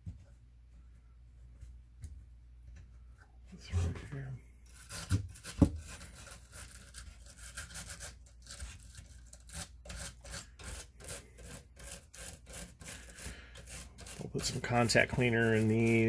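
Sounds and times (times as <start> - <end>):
brush scrubbing circuit board: 4.8 - 16.0.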